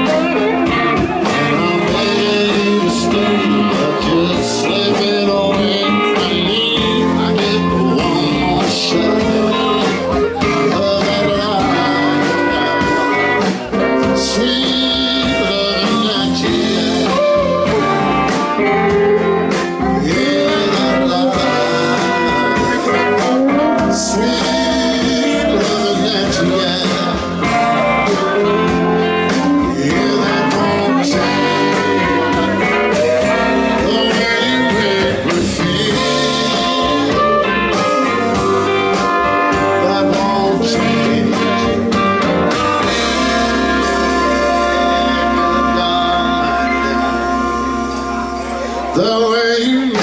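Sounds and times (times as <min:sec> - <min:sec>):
electric guitar: 0:00.0 - 0:50.0
live blues band playing: 0:00.0 - 0:50.0.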